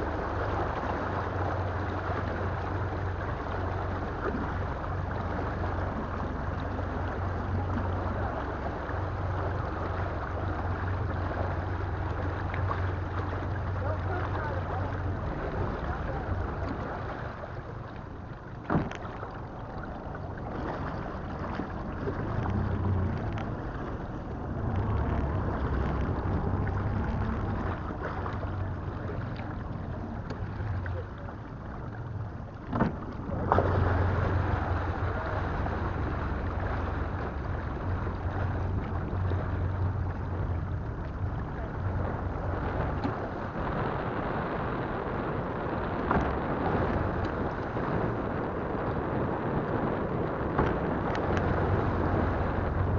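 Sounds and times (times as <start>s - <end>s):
wind buffeting microphone: 0.0s - 52.9s
knocks against boat: 18.6s - 19.3s, 32.6s - 33.7s, 50.5s - 51.6s.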